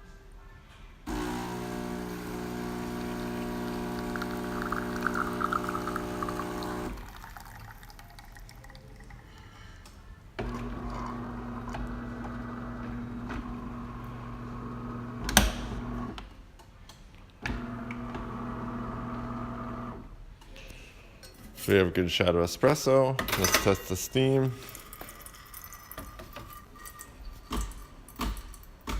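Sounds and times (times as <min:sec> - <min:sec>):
espresso machine pump hum: 0:01.1 - 0:07.9, 0:10.5 - 0:16.1, 0:17.6 - 0:19.9.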